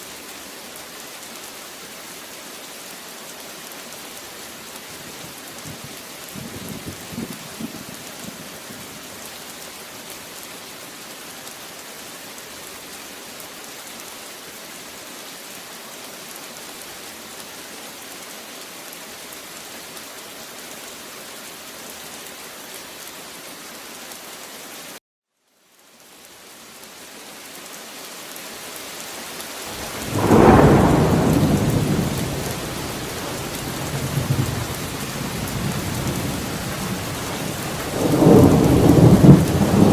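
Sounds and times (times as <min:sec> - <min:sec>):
steady rain: 0:00.0 - 0:39.9
thunder rumbling: 0:29.7 - 0:39.9
loud thunder clap: 0:29.8 - 0:33.1.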